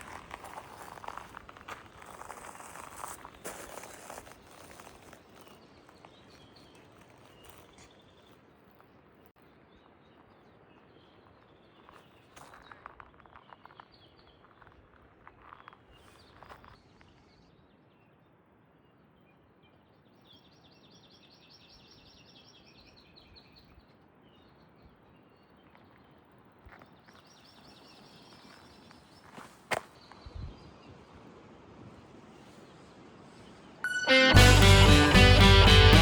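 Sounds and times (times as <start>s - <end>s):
footsteps crunching: 0.0s - 8.3s, 28.4s - 30.0s
bird high trill: 33.8s - 36.0s.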